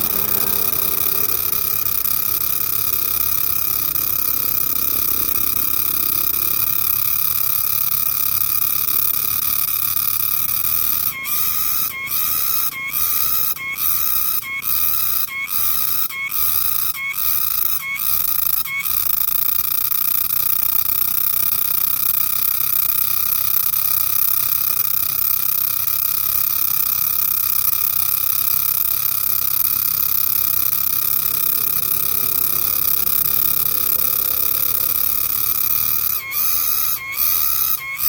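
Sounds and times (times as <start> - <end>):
cicada buzzing: 0.0 - 38.0.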